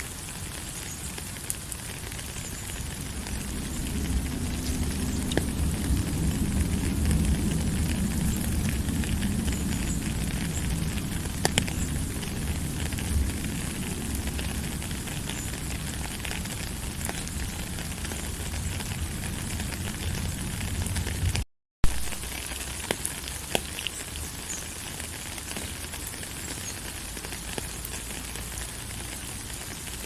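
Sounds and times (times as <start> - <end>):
sharp crackles: 0.0 - 30.0
low rumble: 2.0 - 22.2.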